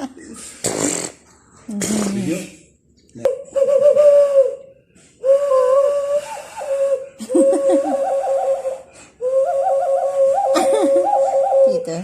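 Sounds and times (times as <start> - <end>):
whistle-like pitched tone: 3.4 - 12.0.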